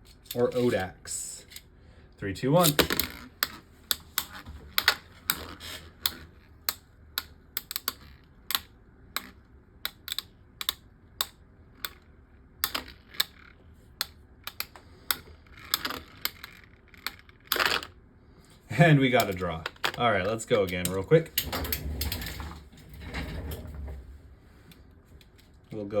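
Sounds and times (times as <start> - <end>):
faint steady hum: 0.0 - 26.0
plastic tops clicking and clacking: 2.6 - 18.0.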